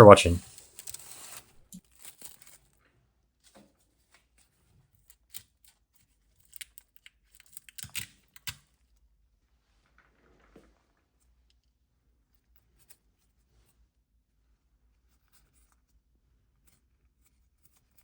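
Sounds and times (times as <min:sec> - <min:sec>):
small handling clicks: 0:06.4 - 0:08.6.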